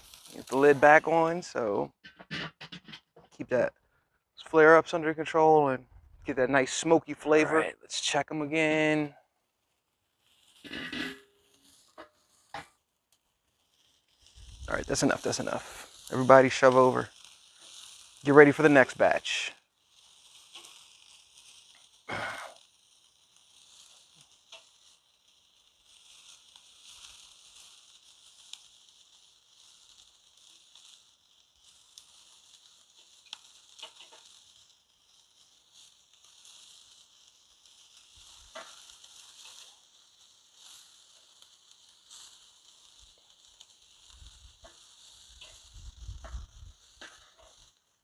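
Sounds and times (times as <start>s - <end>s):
chicken sizzling on a grill: 0.0s - 3.7s, 6.0s - 48.0s
fat popping and crackling: 0.0s - 3.7s, 5.8s - 7.6s, 10.1s - 25.0s, 25.8s - 48.0s
low rumble: 5.8s - 6.6s.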